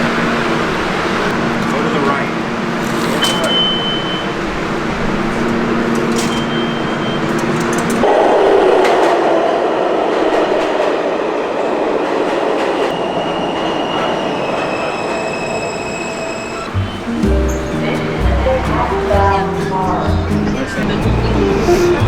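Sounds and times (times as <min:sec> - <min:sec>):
subway train rumbling on rails: 0:00.0 - 0:22.0
high wheel squeals: 0:02.3 - 0:08.0, 0:12.9 - 0:18.0.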